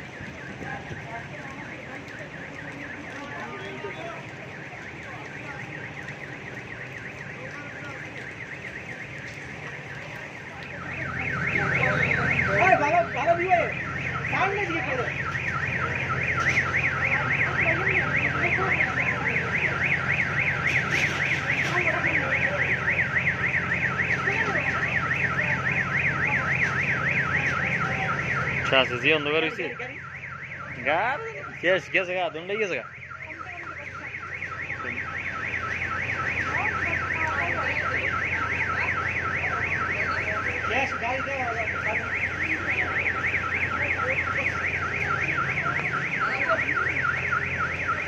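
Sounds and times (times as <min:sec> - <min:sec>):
electronic alarm warbling: 0:10.8 - 0:48.0.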